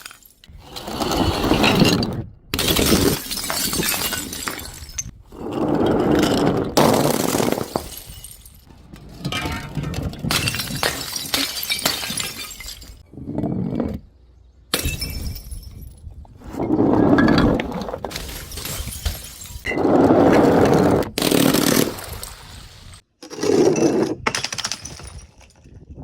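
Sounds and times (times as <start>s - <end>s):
glass bottles shattering: 0.0s - 0.5s, 1.5s - 13.0s, 14.7s - 16.0s, 17.4s - 19.8s, 24.2s - 25.7s
glass shards clinking: 2.6s - 5.1s, 7.0s - 13.0s, 18.1s - 19.8s.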